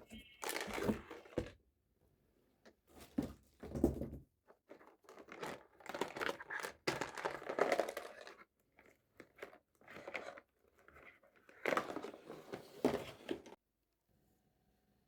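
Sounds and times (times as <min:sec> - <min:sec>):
toy packaging crinkling and tearing: 0:00.1 - 0:01.4, 0:04.9 - 0:08.5.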